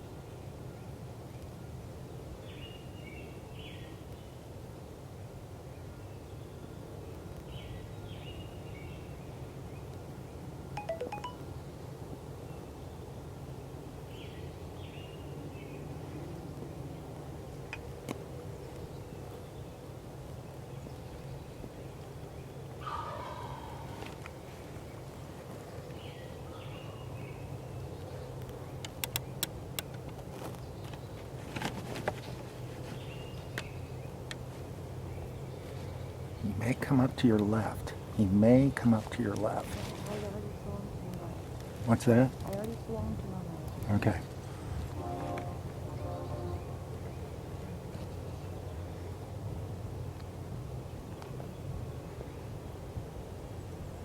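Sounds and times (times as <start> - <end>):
outdoor background noise: 0.0 - 54.0
faint songbird chirps: 5.6 - 16.3, 18.6 - 31.3, 43.7 - 49.3
turkey yelps: 22.8 - 24.0
faint bird calls: 22.8 - 25.0
sharp clicks: 28.8 - 30.0
steady low hum: 39.5 - 54.0.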